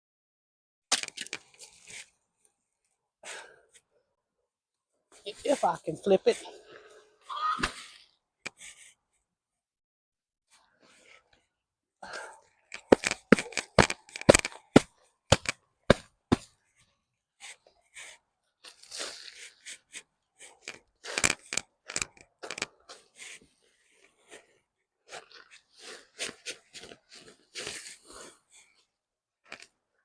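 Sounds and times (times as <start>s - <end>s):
hands digging in dry soil: 17.4s - 21.3s, 25.1s - 28.3s.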